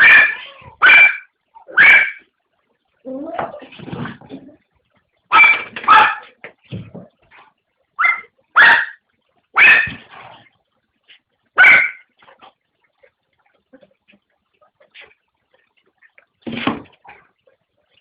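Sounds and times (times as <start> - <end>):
dog barking: 0.0 - 2.2, 5.3 - 6.4, 8.0 - 9.0, 9.6 - 10.0, 11.6 - 12.1
dog yelping: 0.0 - 2.2, 5.3 - 6.3, 8.0 - 9.0, 9.6 - 10.0, 11.6 - 12.0.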